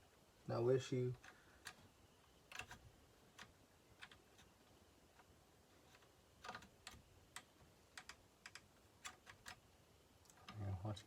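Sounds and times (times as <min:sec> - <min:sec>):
small parts clicking: 0:02.5 - 0:09.6.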